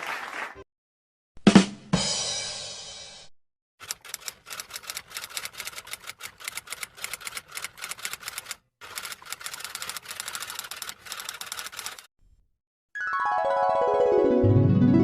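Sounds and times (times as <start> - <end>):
keyboard typing: 3.8 - 12.1.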